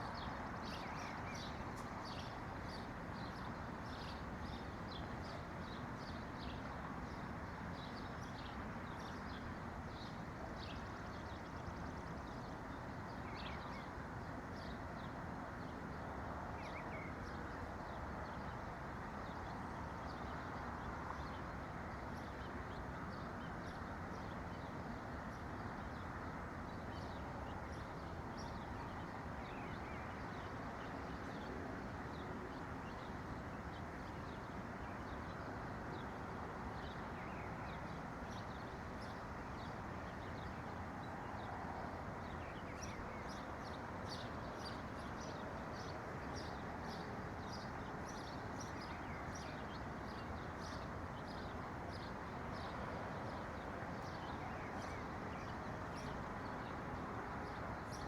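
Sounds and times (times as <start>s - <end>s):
low background noise: 0.0s - 58.0s
songbirds chirping: 36.7s - 58.0s.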